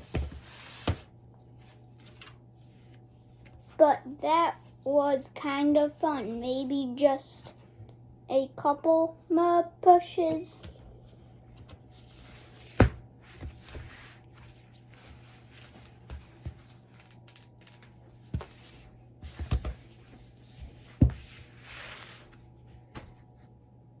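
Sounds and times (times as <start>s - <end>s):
taps on book pages: 0.0s - 1.1s, 12.7s - 13.9s, 18.3s - 18.6s, 19.3s - 19.9s, 20.6s - 21.3s.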